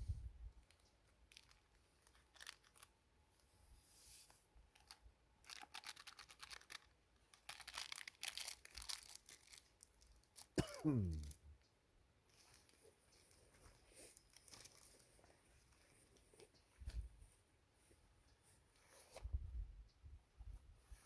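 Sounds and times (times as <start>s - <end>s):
crinkling and rustling: 0.6s - 3.6s, 4.2s - 11.4s, 12.2s - 19.5s.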